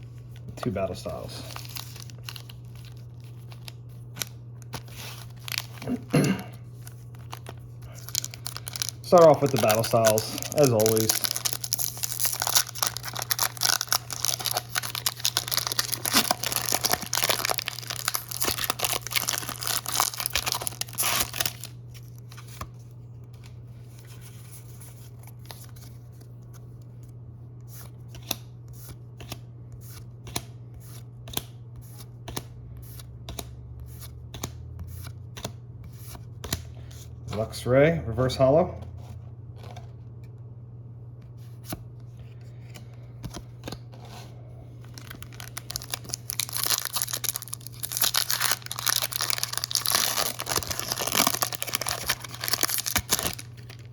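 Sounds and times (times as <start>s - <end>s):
steady low hum: 0.0s - 53.9s
foil wrapper tearing and crinkling: 1.4s - 6.2s, 6.8s - 22.1s, 44.9s - 53.9s.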